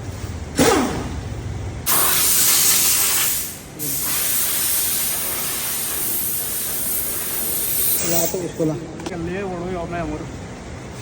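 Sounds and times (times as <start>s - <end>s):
pressurised spray hissing: 1.9s - 8.3s.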